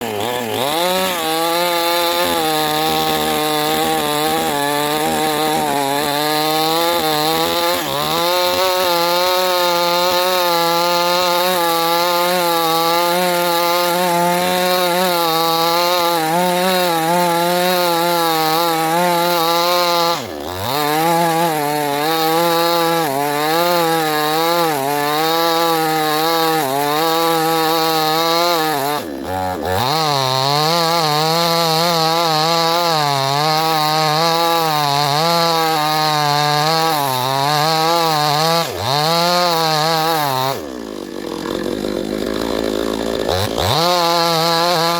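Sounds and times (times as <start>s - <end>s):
chainsaw cutting wood: 0.0s - 44.9s.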